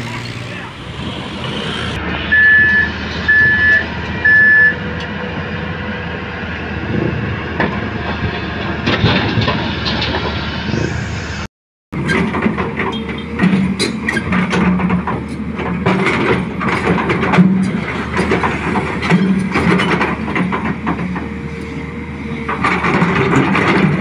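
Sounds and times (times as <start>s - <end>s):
heavy construction machinery running: 0.0s - 24.0s
reversing alarm beeps: 2.3s - 4.8s
metal clanking: 12.0s - 21.3s.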